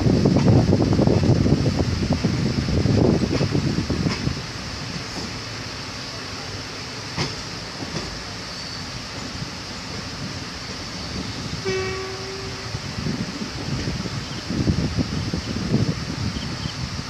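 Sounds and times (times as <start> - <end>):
train rumbling and rattling: 0.0 - 17.0
locomotive horn: 11.4 - 12.9.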